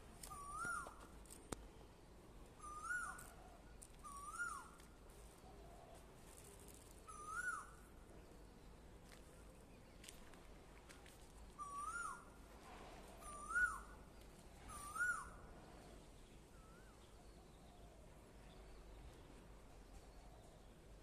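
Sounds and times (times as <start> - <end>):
bird whistled calls: 0.3 - 1.0, 2.6 - 3.3, 4.0 - 4.8, 7.1 - 7.8, 11.6 - 12.3, 13.2 - 14.0, 14.7 - 15.4, 16.6 - 17.0.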